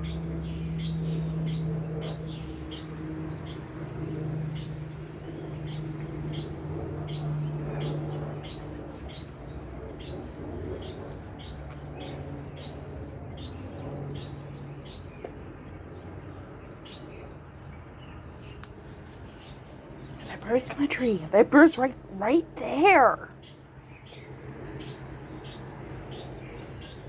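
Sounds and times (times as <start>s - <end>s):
songbird chirping: 18.0s - 24.2s.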